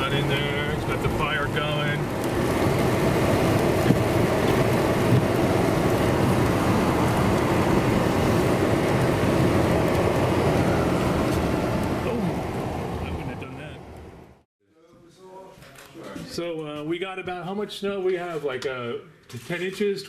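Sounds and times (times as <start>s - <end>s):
vehicle rushing along snowy road: 0.0s - 14.4s.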